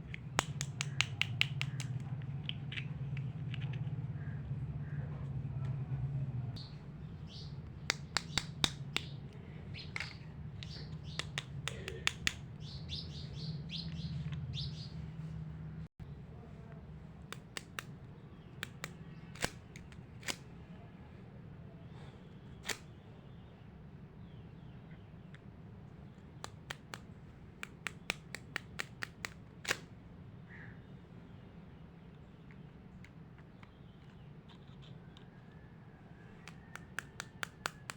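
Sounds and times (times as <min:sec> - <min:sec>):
plastic toy pieces clicking: 0:00.0 - 0:03.7, 0:09.8 - 0:12.5, 0:18.6 - 0:20.4.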